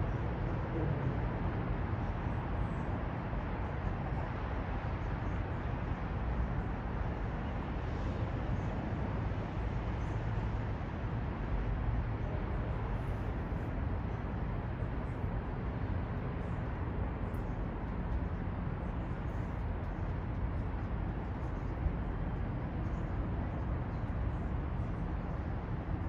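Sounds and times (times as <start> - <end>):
distant traffic rumble: 0.0 - 26.0.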